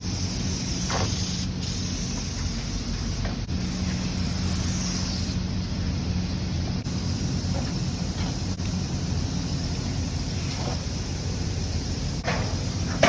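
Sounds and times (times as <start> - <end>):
high hissing spray: 0.0 - 5.5.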